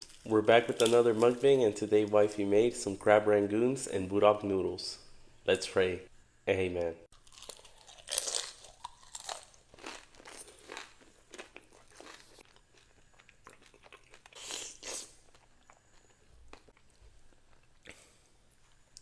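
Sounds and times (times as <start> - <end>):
crunching and chewing fried food: 7.1 - 19.0.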